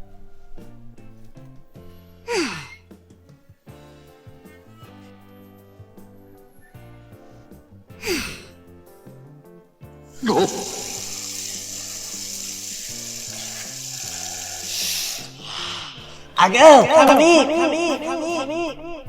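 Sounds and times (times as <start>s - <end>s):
background music: 0.0s - 19.0s
rushing water: 10.2s - 15.4s.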